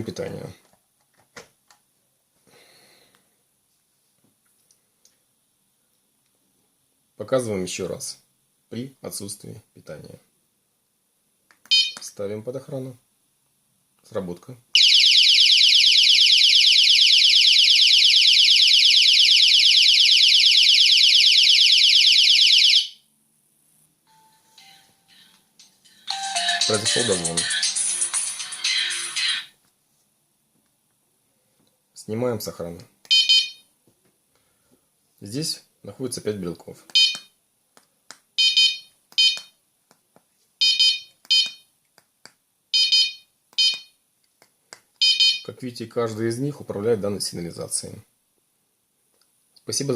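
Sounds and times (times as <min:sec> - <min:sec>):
alarm sounder chirps: 0:14.8 - 0:23.0, 0:33.1 - 0:33.6, 0:37.0 - 0:37.3, 0:38.4 - 0:39.5, 0:40.6 - 0:41.6, 0:42.8 - 0:43.9, 0:45.0 - 0:45.5.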